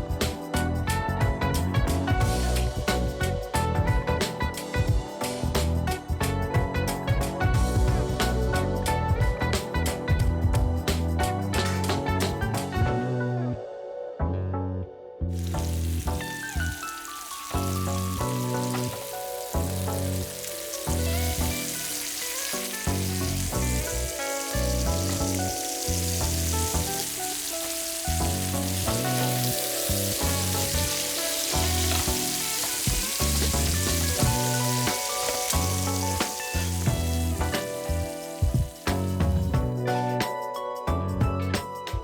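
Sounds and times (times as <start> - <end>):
background music with bass: 0.0 - 42.0
chicken sizzling in a pan: 15.4 - 39.6.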